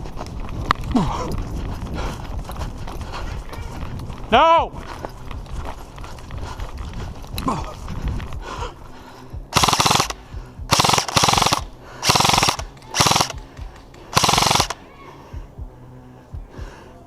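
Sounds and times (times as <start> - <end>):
airsoft gun firing bursts: 9.5 - 14.8.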